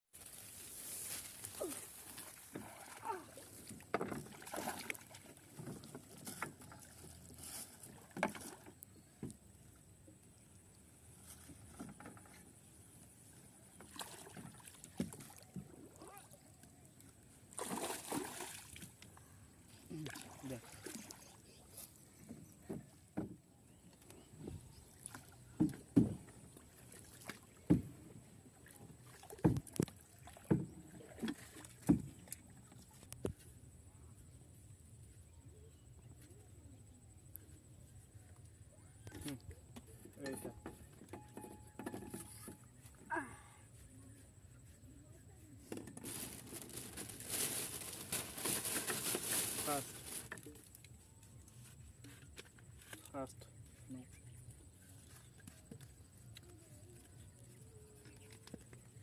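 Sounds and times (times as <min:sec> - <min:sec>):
paddle strokes: 0:00.2 - 0:09.5
water splashing around boat: 0:00.3 - 0:09.2, 0:10.7 - 0:33.2
dull knocks and thuds: 0:25.6 - 0:26.3.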